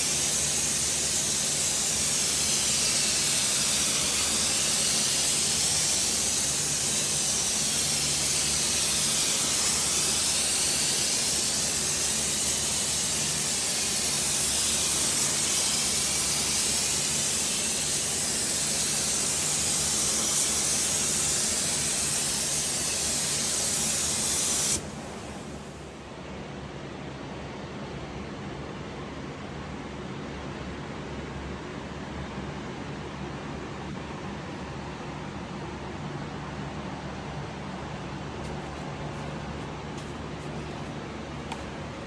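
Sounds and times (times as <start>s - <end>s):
paint spray gun hissing: 0.0s - 26.0s.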